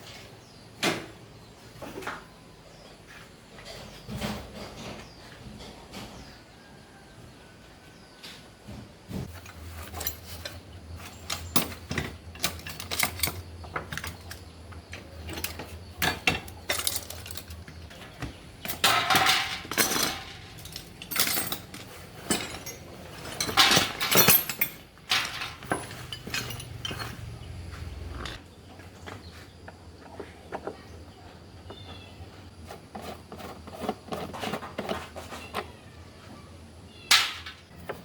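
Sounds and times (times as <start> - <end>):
metal rattling and scraping: 9.2 - 28.4
metal tools clinking: 9.3 - 28.4.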